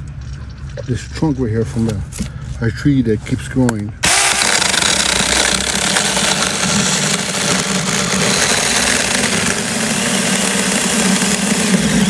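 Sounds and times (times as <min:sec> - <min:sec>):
chainsaw cutting tree trunk: 0:04.0 - 0:12.0.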